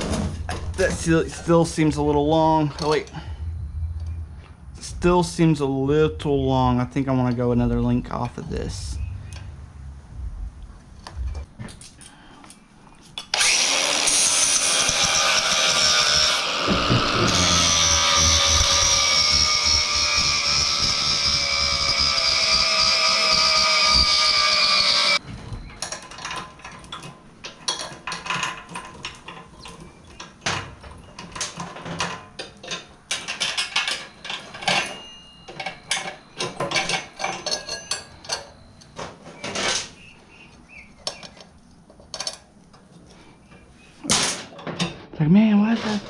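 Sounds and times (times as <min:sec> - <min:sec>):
small motorised tool whining: 0:13.3 - 0:25.7
metal tools and chain clinking: 0:25.1 - 0:40.1.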